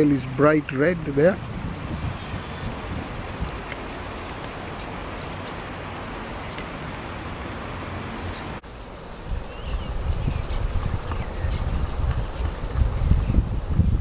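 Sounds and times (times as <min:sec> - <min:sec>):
outdoor background noise: 0:00.0 - 0:14.0
faint high bird chirps: 0:07.4 - 0:08.6.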